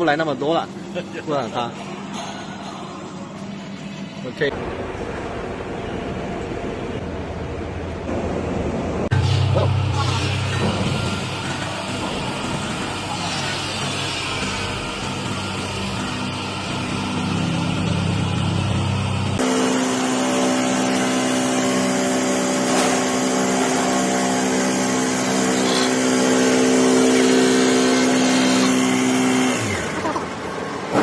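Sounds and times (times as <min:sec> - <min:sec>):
machine motor humming: 0:09.1 - 0:31.0.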